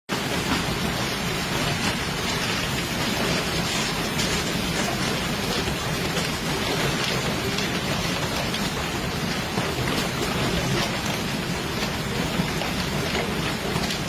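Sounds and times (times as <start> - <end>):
heavy rain pouring: 0.1 - 14.0.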